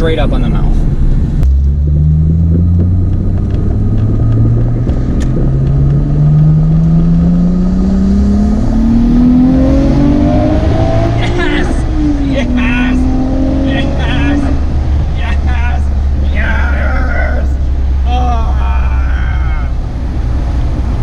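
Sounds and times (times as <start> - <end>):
car engine accelerating: 0.0 - 21.0.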